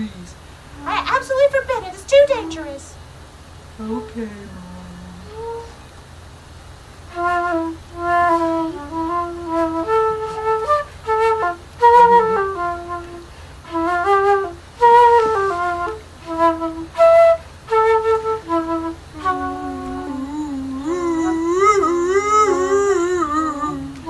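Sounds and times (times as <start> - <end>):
flute melody: 5.2 - 5.9, 7.1 - 24.0.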